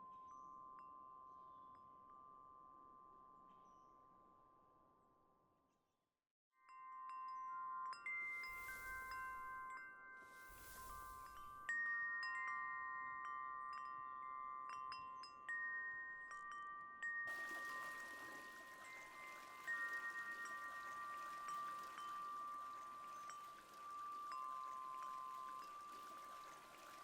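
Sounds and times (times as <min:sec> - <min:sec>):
bright chiming tones: 0:17.3 - 0:27.0.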